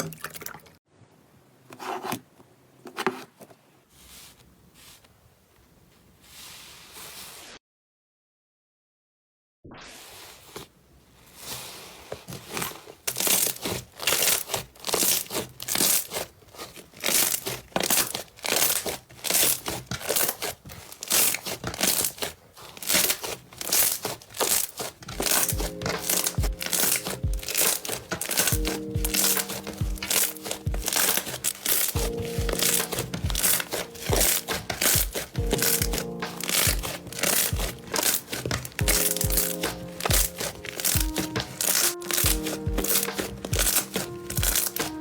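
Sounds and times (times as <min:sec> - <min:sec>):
slime squishing and popping: 0:13.1 - 0:16.3, 0:16.9 - 0:45.0
background music with beat: 0:25.4 - 0:45.0.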